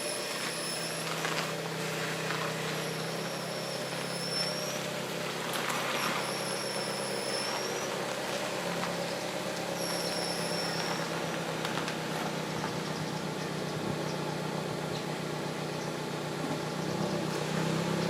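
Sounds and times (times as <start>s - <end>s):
car mechanical hum: 0.0s - 18.0s
high-pitched whine: 0.0s - 18.0s.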